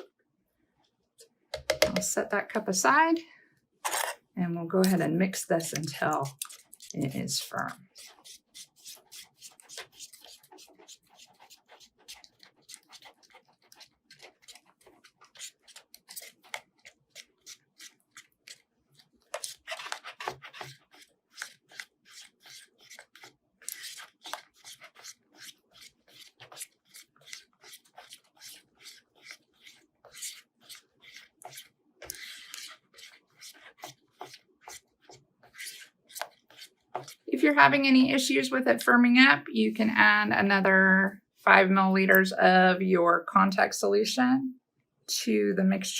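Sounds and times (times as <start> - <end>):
plastic spoon scraping in cup: 3.9 - 4.2, 4.8 - 38.0.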